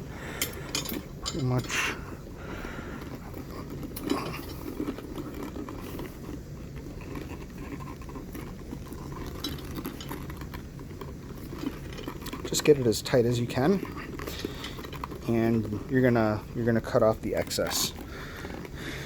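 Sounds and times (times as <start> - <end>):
low steady hum: 0.0 - 19.0
strap rubbing and scraping: 0.0 - 19.0.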